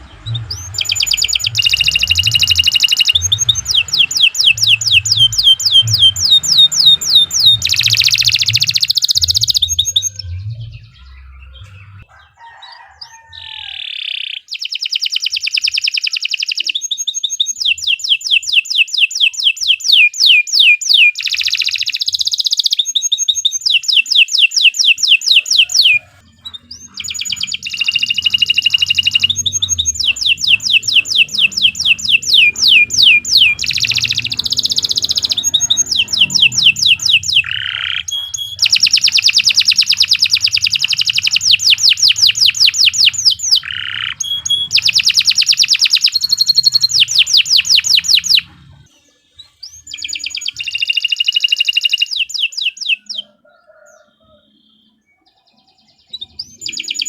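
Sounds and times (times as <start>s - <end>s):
low rumble: 0.0s - 12.1s, 26.2s - 38.8s
canary singing: 0.0s - 57.0s.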